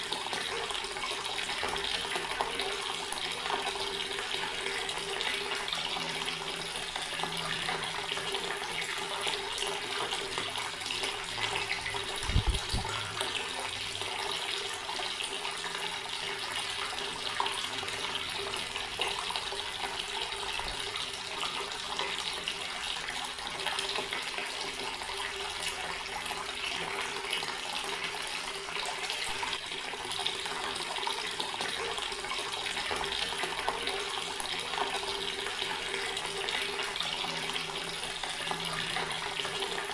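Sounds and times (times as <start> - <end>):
water running from tap: 0.0 - 39.9.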